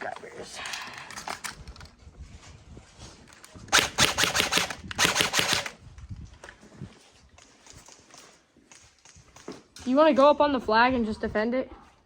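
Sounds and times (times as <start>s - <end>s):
airsoft gun full-auto bursts: 3.7s - 5.8s.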